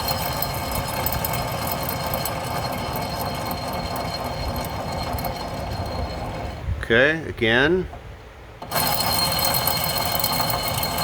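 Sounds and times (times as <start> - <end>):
wheel bearing rough rumble: 0.0 - 7.0, 8.4 - 11.0.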